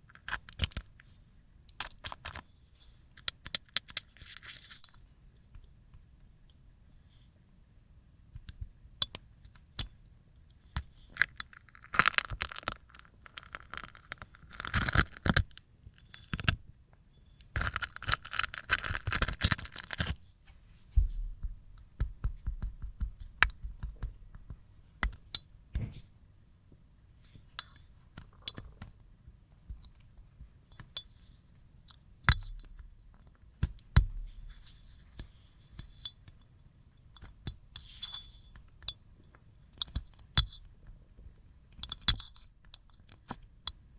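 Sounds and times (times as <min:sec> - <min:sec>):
slime film peeling and crackling: 0:11.1 - 0:16.6, 0:17.5 - 0:20.2.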